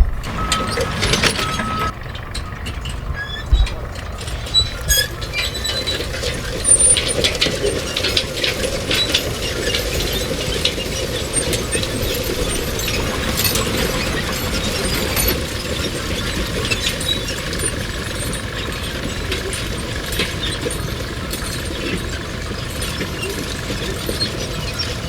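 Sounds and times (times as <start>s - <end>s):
machinery low rumble: 0.0s - 25.0s
metallic clicks and clanks: 0.0s - 25.0s.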